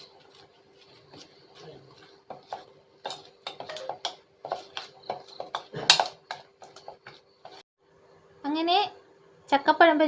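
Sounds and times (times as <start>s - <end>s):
spoon stirring batter in a bowl: 0.0s - 7.6s.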